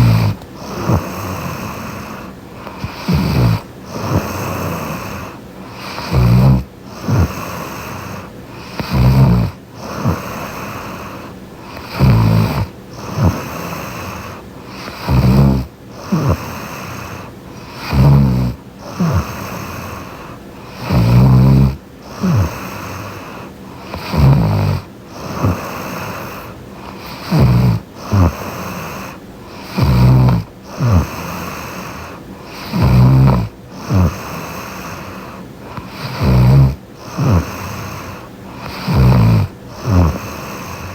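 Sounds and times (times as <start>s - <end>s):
woman snoring: 0.0s - 40.9s.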